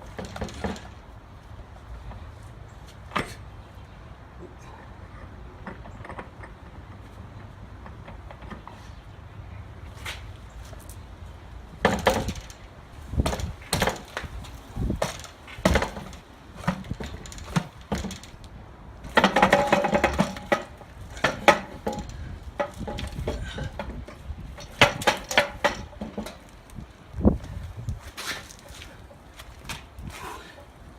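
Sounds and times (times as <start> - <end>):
metal clanks and knocks: 0.0 - 1.0, 5.2 - 9.0, 11.8 - 26.6.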